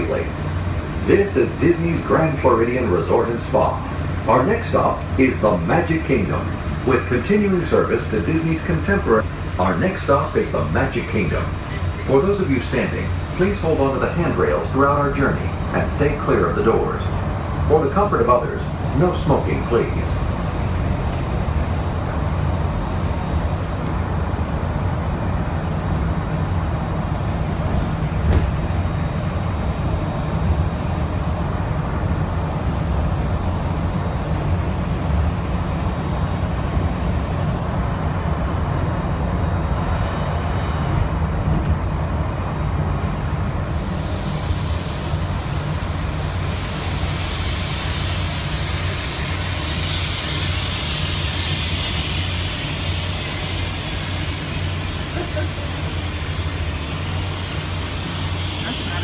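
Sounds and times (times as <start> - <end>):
monorail train low rumble: 0.0 - 59.0
high-pitched hiss: 44.0 - 59.0.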